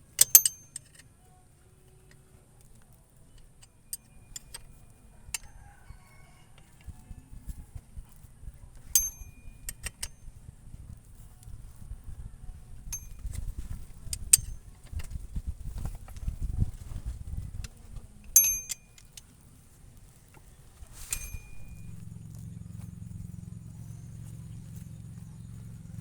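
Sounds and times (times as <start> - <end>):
sharp clicks and clinks: 0.0 - 1.1, 3.3 - 5.7, 8.9 - 10.3, 12.9 - 15.2, 18.2 - 19.3, 21.0 - 22.5.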